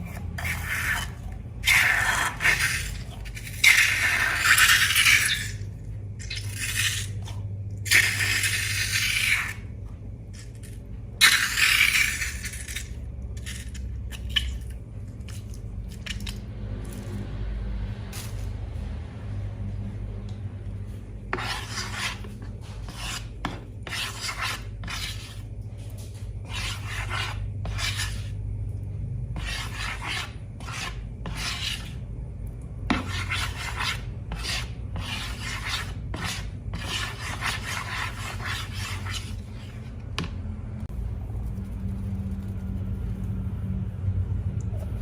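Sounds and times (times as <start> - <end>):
rasping strokes: 0.0 - 7.3, 21.3 - 25.5, 26.1 - 28.4, 29.4 - 32.0, 32.9 - 39.9
steady low hum: 0.0 - 45.0.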